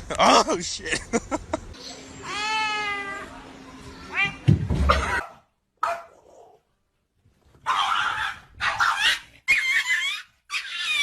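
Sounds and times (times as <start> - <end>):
pet animal crying: 7.7 - 11.0.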